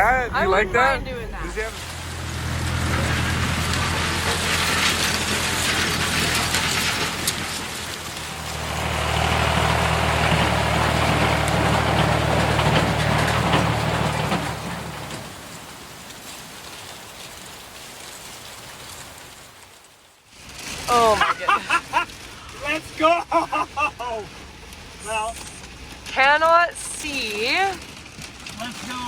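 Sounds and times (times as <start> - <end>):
tractor diesel engine drone: 0.0 - 15.5.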